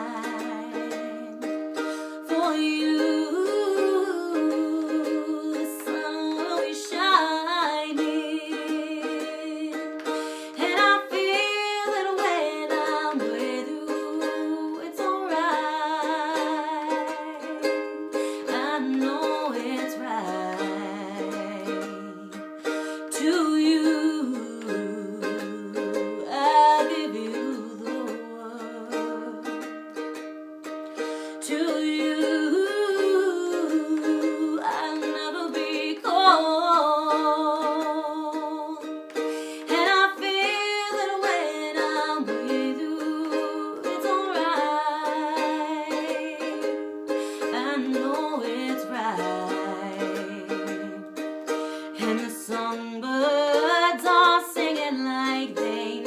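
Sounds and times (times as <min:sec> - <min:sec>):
person singing with vibrato: 0:00.0 - 0:29.6, 0:31.0 - 0:56.0
plucked string instrument: 0:00.0 - 0:56.0.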